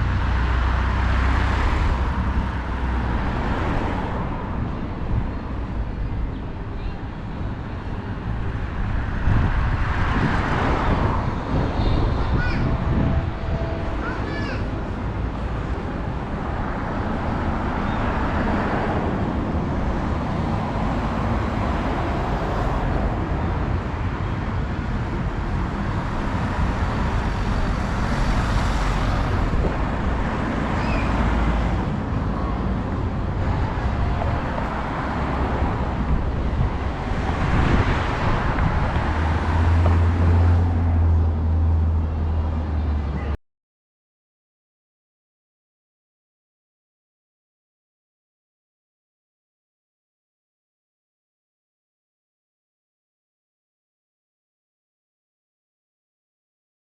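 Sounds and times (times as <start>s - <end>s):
wind rumble on microphone: 0.0s - 42.7s
cars passing: 0.0s - 43.4s.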